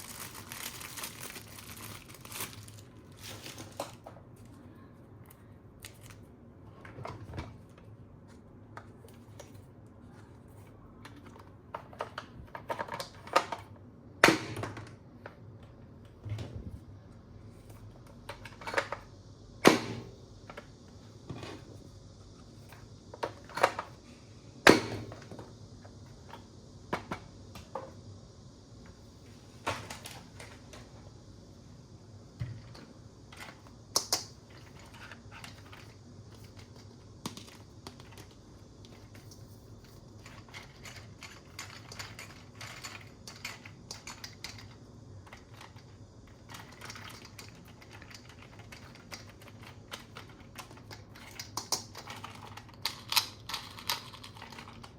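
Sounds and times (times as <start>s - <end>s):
plastic toy parts clicking: 46.4s - 54.9s.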